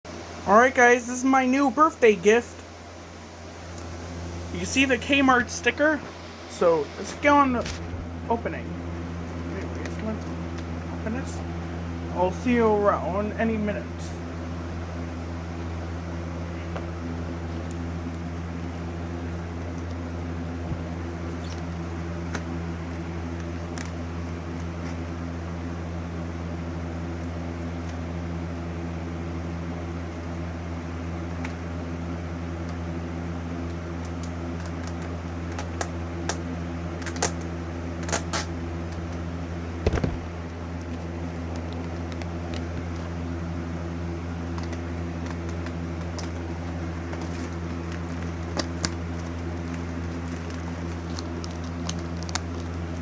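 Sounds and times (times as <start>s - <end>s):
low machine hum: 0.1s - 53.0s
loud knock: 39.9s - 40.3s.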